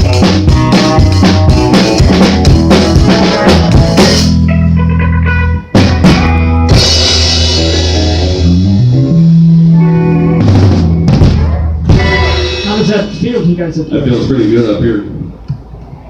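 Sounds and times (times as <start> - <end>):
drum kit hits: 0.0 - 4.6, 5.7 - 8.6, 10.2 - 13.6
guitar chords: 0.0 - 13.4
bass guitar: 0.0 - 16.0
cymbal crashes: 11.9 - 13.4.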